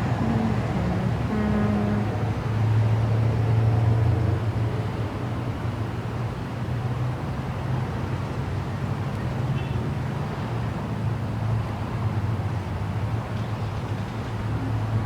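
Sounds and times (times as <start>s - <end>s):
vehicle engine rumble: 0.0s - 2.5s
road and traffic noise: 0.0s - 15.0s.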